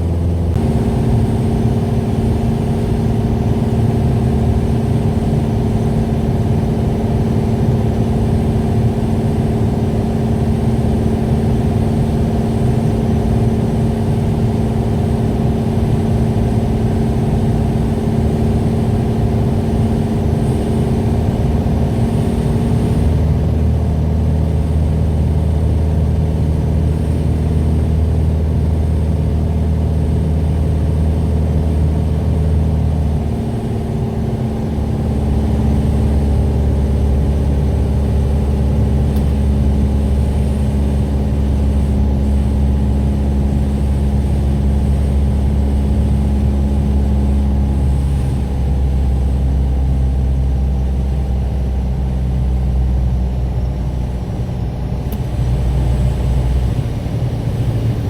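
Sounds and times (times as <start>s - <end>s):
deeper hum: 0.0s - 58.0s
light aircraft engine drone: 0.0s - 58.0s.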